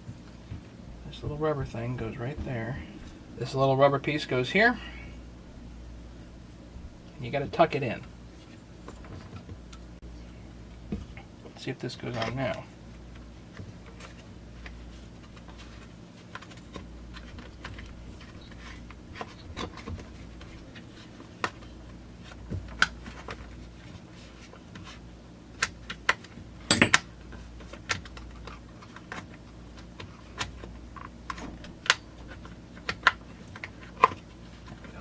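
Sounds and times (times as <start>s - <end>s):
low steady hum: 0.0s - 35.0s.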